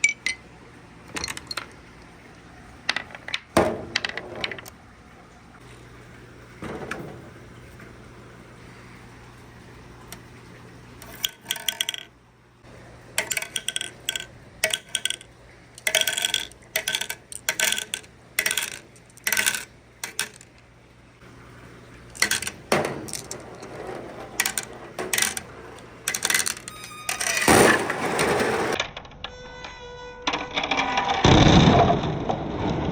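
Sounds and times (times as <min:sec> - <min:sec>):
low steady hum: 0:00.0 - 0:32.3
marbles clicking on wooden run: 0:01.1 - 0:01.8, 0:02.9 - 0:04.7, 0:11.0 - 0:12.1, 0:13.1 - 0:20.6, 0:22.1 - 0:28.8.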